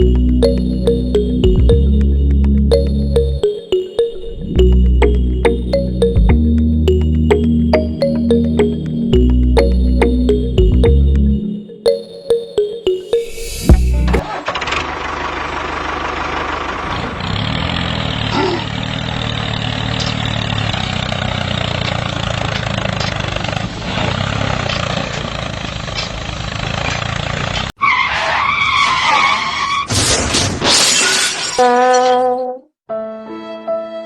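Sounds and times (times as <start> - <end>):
music: 0.0 - 14.2, 32.9 - 34.0
wavering pitched sound effects: 0.0 - 14.3.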